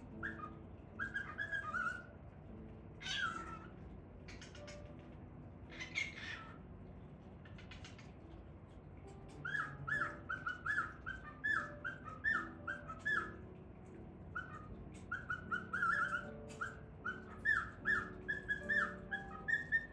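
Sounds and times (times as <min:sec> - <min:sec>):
cockatiel whistling: 0:00.1 - 0:02.2, 0:03.0 - 0:03.7, 0:09.3 - 0:19.9.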